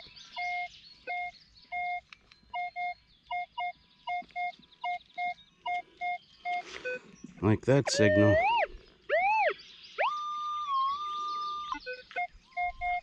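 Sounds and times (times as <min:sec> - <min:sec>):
metal detector beeps: 0:00.0 - 0:13.0.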